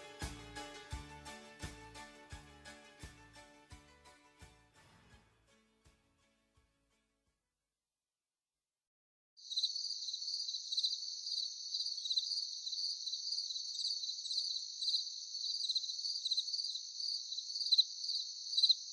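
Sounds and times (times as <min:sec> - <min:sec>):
insects chirping: 0:09.4 - 0:18.9.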